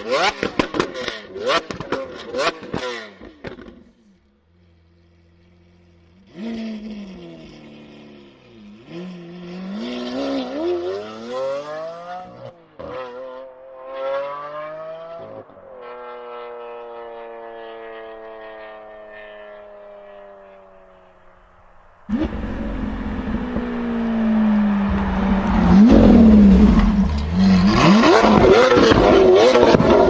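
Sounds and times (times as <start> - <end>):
car engine revving: 19.1 - 30.0.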